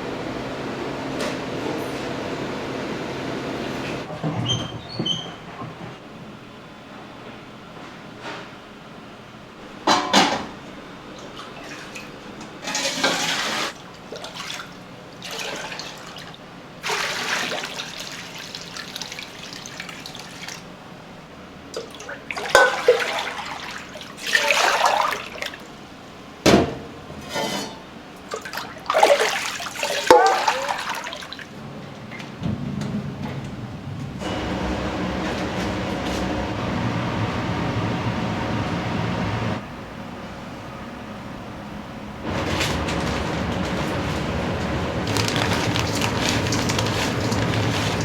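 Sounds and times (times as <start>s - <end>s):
water splashing and pouring: 11.6s - 20.7s, 21.8s - 25.6s, 28.3s - 31.5s, 42.3s - 48.0s.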